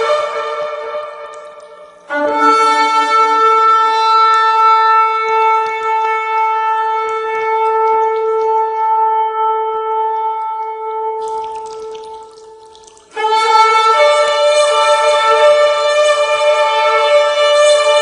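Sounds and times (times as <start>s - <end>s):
shofar blast: 0.0s - 12.2s.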